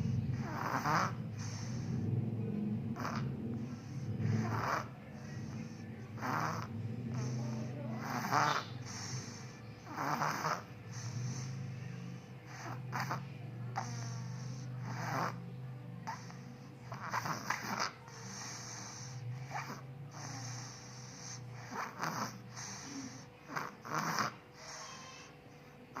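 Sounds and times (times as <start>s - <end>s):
child snoring: 0.0s - 2.2s, 2.9s - 26.0s
low hum: 0.0s - 8.0s.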